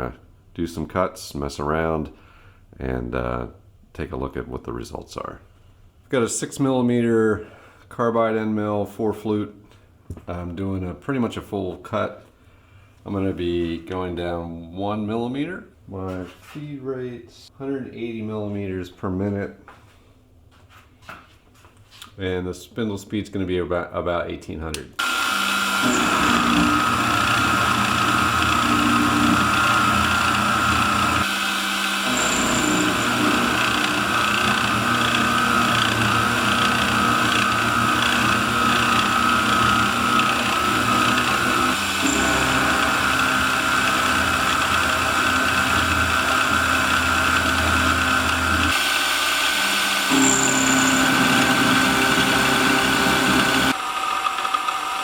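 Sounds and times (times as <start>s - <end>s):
stepper motor tones: 25.0s - 54.9s
mill spindle whine: 25.0s - 55.0s.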